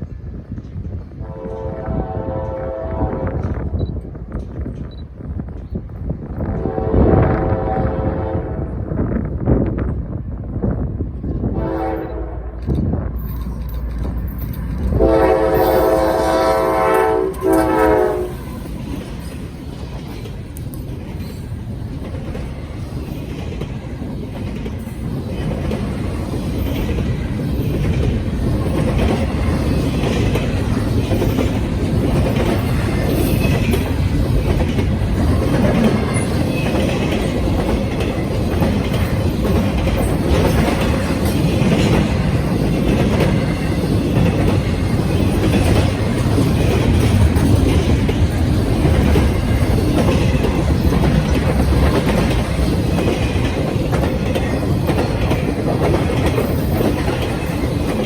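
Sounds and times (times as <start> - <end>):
train wheels clattering on rails: 0.0 - 6.9, 10.6 - 58.0
locomotive air horn blasts: 1.2 - 3.6, 6.5 - 8.8, 11.5 - 12.6, 14.9 - 18.5.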